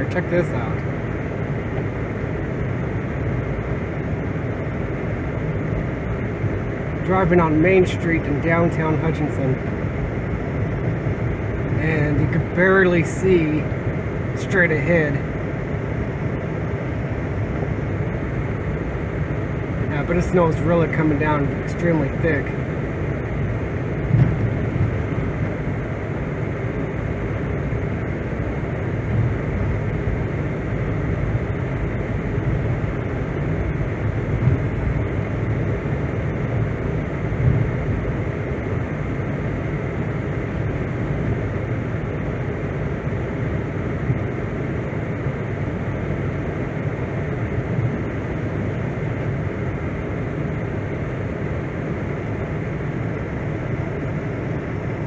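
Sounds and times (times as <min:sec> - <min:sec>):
car engine and road noise: 0:00.0 - 0:55.0
car bumps: 0:24.1 - 0:24.9.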